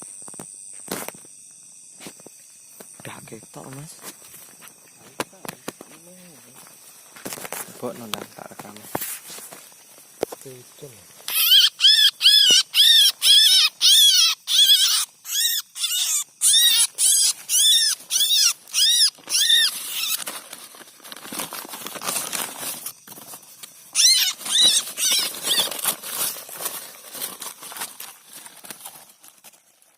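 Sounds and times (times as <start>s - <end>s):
bird calling loudly: 11.3s - 20.2s, 23.9s - 25.7s.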